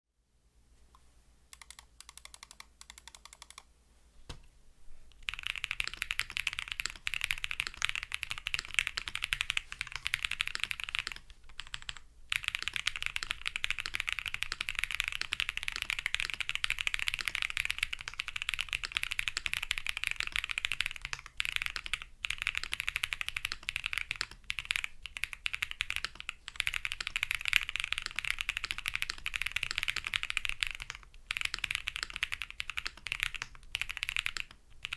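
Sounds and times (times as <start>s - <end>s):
typing on keyboard: 1.6s - 3.6s, 5.2s - 34.9s.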